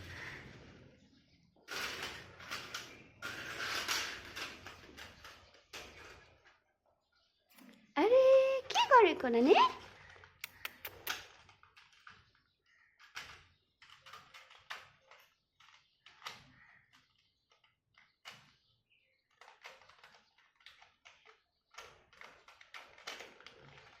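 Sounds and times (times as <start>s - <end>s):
plastic toy car clicking: 1.7s - 6.5s, 13.0s - 24.0s.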